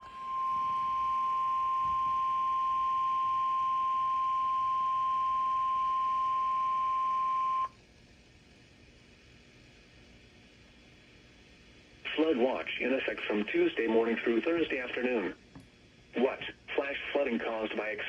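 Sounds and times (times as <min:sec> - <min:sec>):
steady warning alarm tone: 0:00.0 - 0:07.7
faint radio hiss: 0:00.1 - 0:18.0.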